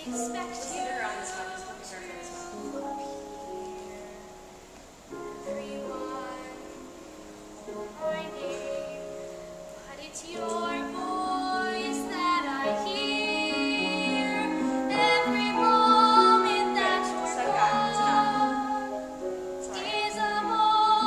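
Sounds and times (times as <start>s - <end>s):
woman singing with vibrato: 0.0s - 3.0s, 5.4s - 6.9s, 9.8s - 21.0s.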